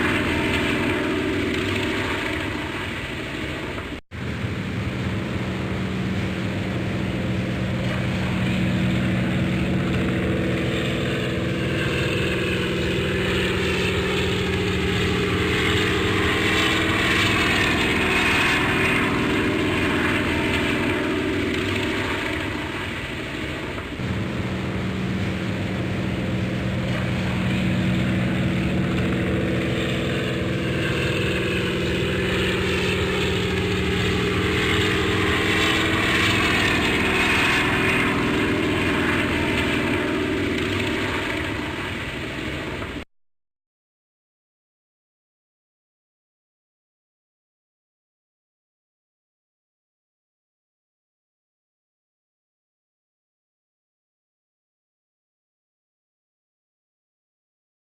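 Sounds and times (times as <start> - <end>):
propeller airplane engine drone: 0.0 - 43.1.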